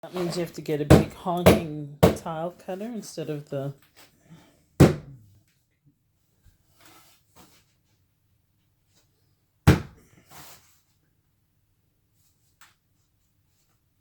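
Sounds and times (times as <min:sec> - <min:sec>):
hard object knocks in echoing room: 0:04.8 - 0:05.2, 0:09.7 - 0:10.0.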